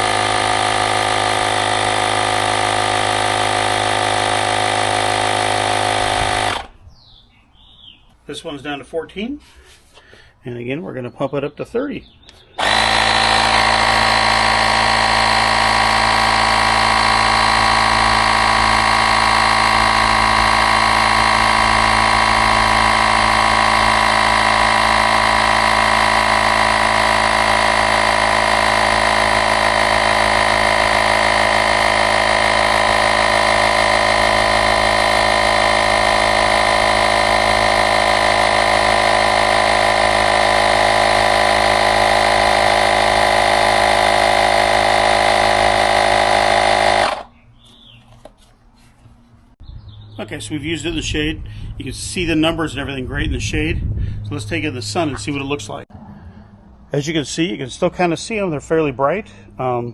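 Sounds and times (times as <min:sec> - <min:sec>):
electric air compressor humming: 0:00.0 - 0:06.8, 0:12.6 - 0:48.4.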